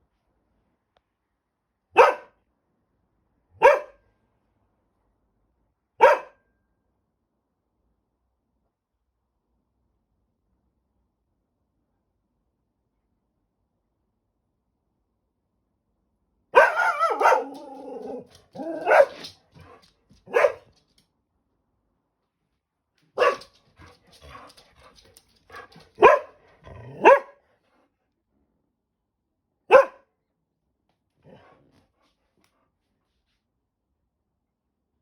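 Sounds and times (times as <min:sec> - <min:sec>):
dog barking: 0:02.0 - 0:02.4, 0:03.6 - 0:04.0, 0:06.0 - 0:06.4, 0:16.5 - 0:20.7, 0:23.2 - 0:23.6, 0:26.0 - 0:27.4, 0:29.7 - 0:30.1.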